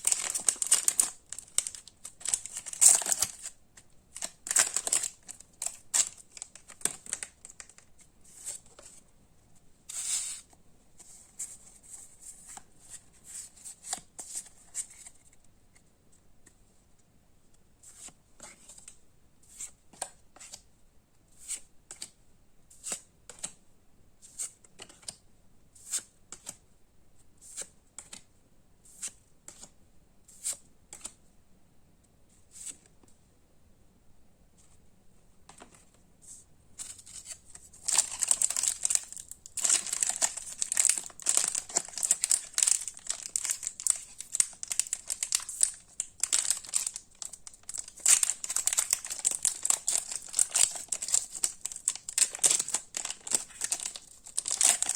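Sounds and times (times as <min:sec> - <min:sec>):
foil wrapper crinkling and tearing: 0:00.0 - 0:03.6, 0:04.2 - 0:07.8, 0:37.8 - 0:54.9.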